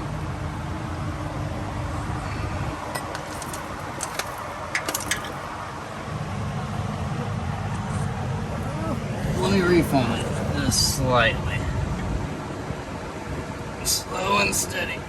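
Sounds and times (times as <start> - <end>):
steady low hum: 0.0 - 15.0
metal tools clinking: 2.9 - 5.5.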